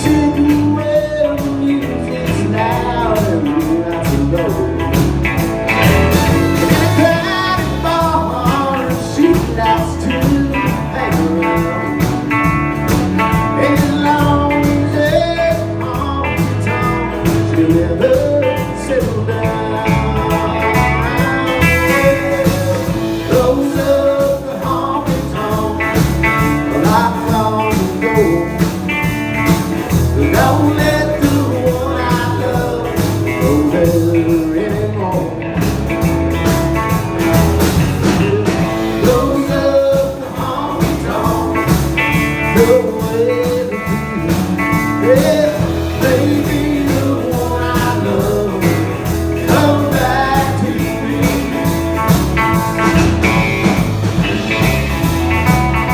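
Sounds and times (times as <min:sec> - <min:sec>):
band playing a song: 0:00.0 - 0:55.9.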